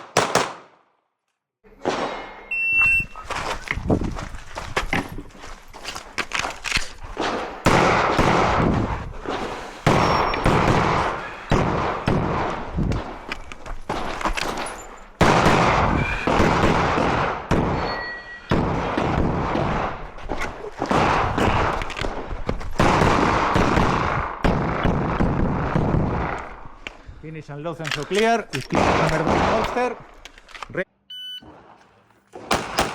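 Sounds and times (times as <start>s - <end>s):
rapid pistol fire: 0.0s - 0.7s, 7.2s - 8.9s, 9.8s - 12.6s, 15.2s - 17.8s.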